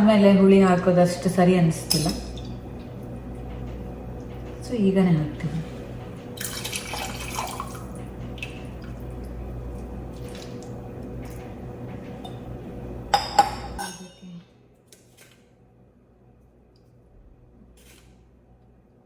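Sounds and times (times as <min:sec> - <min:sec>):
steady low hum: 0:00.0 - 0:19.0
liquid poured into a pot: 0:06.4 - 0:07.9
cookware clinks: 0:13.2 - 0:14.4.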